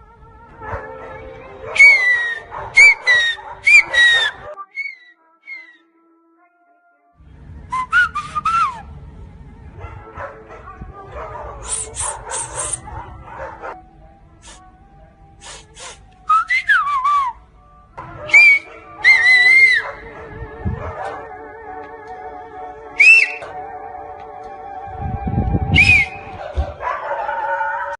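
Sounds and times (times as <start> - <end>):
high warbling whistles: 1.8 - 5.8, 7.7 - 8.9, 18.3 - 20.0, 23.0 - 23.6, 24.9 - 26.4.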